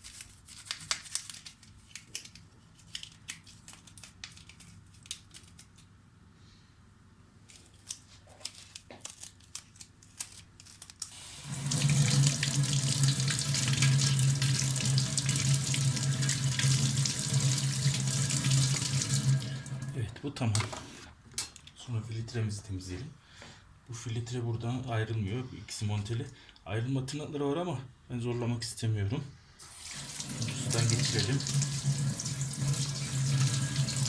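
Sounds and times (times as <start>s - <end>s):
tap water running into sink: 11.3s - 19.9s, 29.8s - 34.0s.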